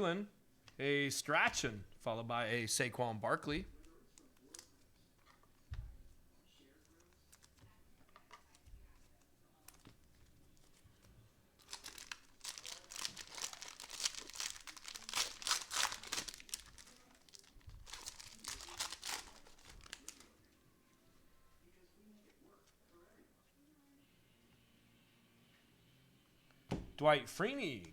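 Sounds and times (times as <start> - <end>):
plastic wrapper crinkling: 11.6 - 20.4.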